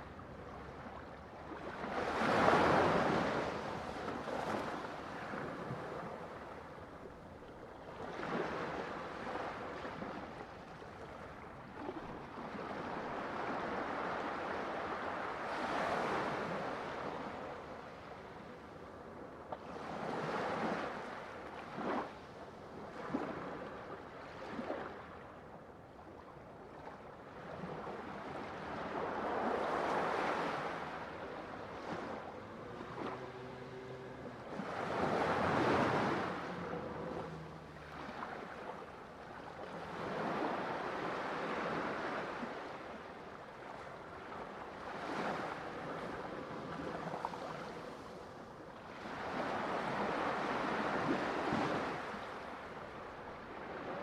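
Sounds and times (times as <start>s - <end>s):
ocean surf breaking: 28.6s - 42.8s
water splashes: 28.8s - 42.5s.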